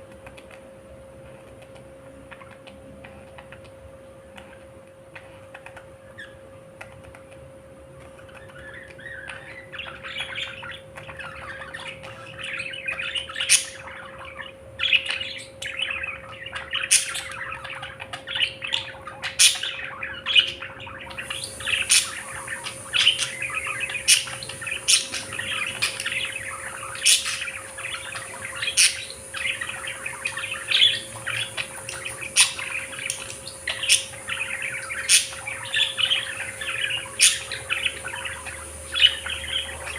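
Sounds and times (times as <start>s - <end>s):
budgerigars chattering and warbling: 4.4s - 6.9s, 8.1s - 39.9s
sharp bird chirps: 8.4s - 39.9s.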